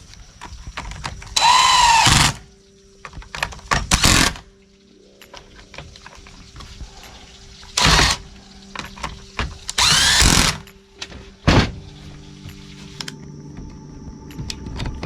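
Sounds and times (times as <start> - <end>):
power driver whining: 1.4 - 2.4, 9.7 - 10.7.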